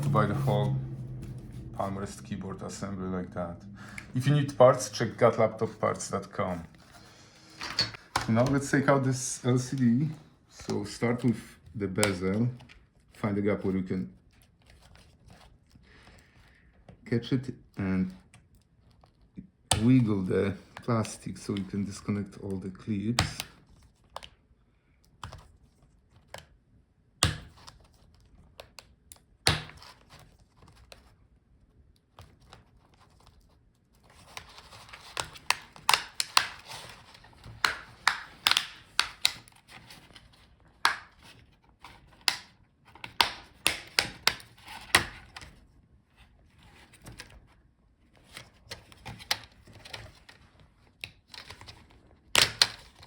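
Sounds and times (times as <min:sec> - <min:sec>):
plastic scraping and rustling: 0:00.0 - 0:24.5, 0:29.7 - 0:53.0
plastic clips snapping: 0:35.0 - 0:39.6.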